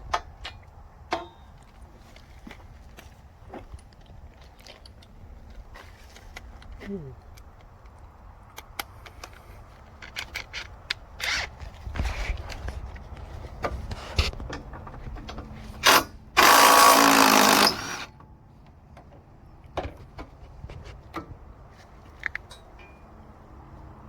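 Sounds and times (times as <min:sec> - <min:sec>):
parts clicking and knocking: 0:00.0 - 0:23.2
loud rasping noise: 0:15.8 - 0:18.1.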